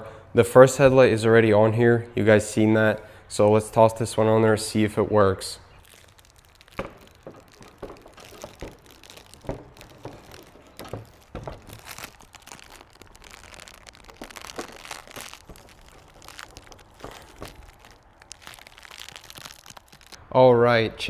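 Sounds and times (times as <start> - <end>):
rustling: 5.6 - 20.2.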